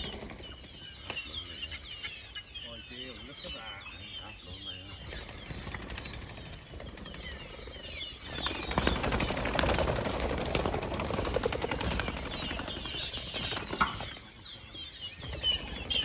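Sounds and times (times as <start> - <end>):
wings flapping: 0.0 - 1.2, 5.0 - 14.4.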